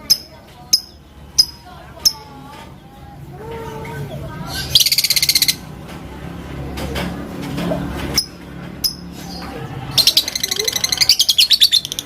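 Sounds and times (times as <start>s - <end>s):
lovebird chattering trill: 4.5s - 5.6s, 10.0s - 12.0s.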